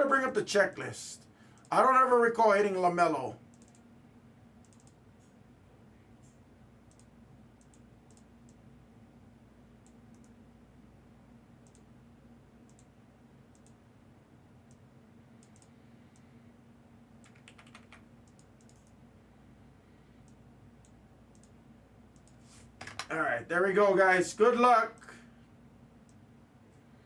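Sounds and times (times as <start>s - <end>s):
low steady hum: 0.0s - 27.0s
typing on computer keyboard: 3.5s - 3.8s, 4.6s - 5.0s, 17.2s - 19.0s.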